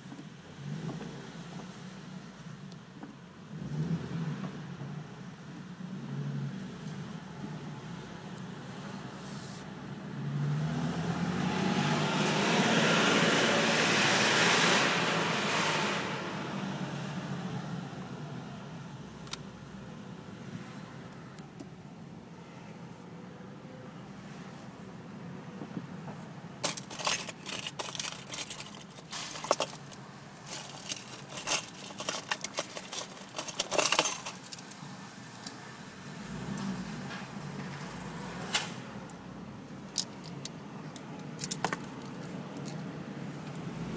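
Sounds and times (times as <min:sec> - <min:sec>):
road noise: 0:00.0 - 0:43.9
car engine pulling away: 0:10.1 - 0:19.2, 0:26.6 - 0:40.6
metallic clicking and jingling: 0:26.6 - 0:35.6, 0:39.9 - 0:43.7.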